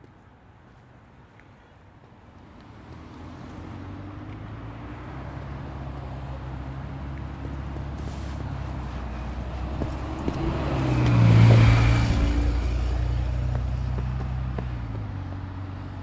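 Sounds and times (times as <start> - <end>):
low engine rumble: 5.4 - 16.0.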